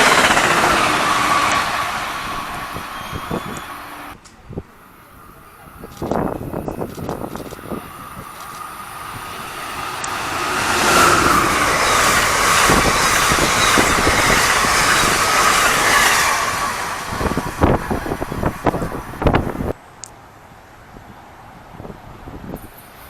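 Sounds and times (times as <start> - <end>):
wind buffeting microphone: 0.0 - 3.7, 5.7 - 19.8, 21.7 - 22.8
train wheels rushing on rails: 0.0 - 4.4, 5.6 - 19.8.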